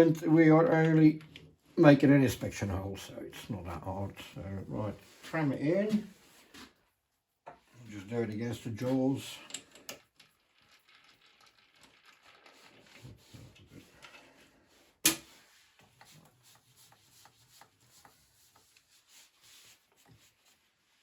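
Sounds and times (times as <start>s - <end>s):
small clicks and rubs of tools: 9.4s - 21.0s.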